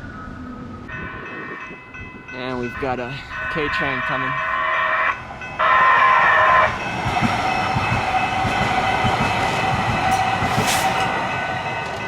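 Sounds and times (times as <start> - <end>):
light rail train whine: 0.0 - 12.0
train wheel knocks: 7.0 - 11.1.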